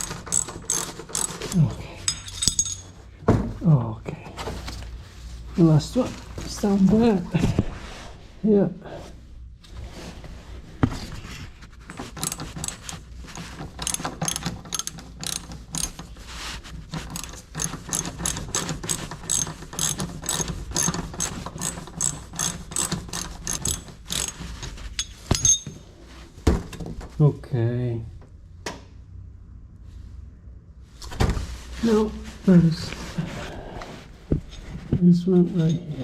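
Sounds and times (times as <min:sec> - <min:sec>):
hand ratchet clicking: 0:00.0 - 0:02.8, 0:11.9 - 0:16.2, 0:17.0 - 0:25.6.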